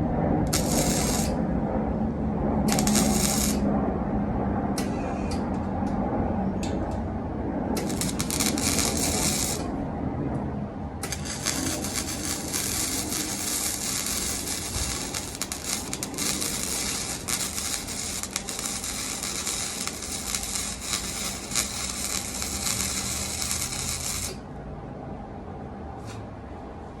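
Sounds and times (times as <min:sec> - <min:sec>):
low hum: 0:00.0 - 0:27.0
welding arc crackling: 0:00.4 - 0:01.4, 0:02.7 - 0:03.6, 0:07.8 - 0:09.7, 0:11.0 - 0:24.4.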